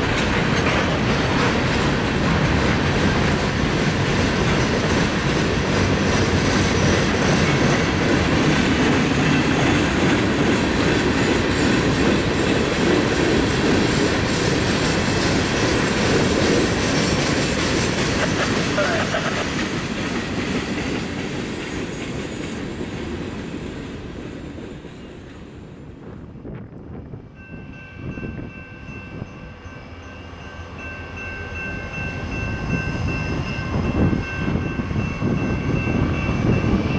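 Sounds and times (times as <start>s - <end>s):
train wheels clacking on rails: 0.0s - 25.8s.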